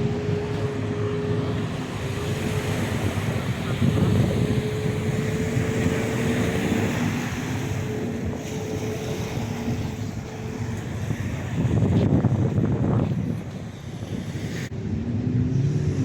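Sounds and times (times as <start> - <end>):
boat engine running: 0.0 - 16.0
wind rumbling on microphone: 0.0 - 16.0.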